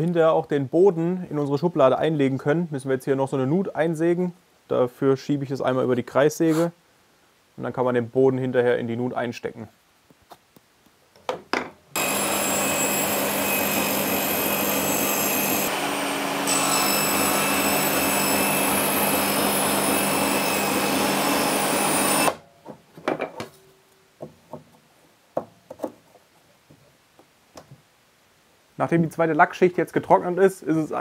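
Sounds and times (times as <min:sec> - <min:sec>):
table saw cutting wood: 0:12.0 - 0:22.4.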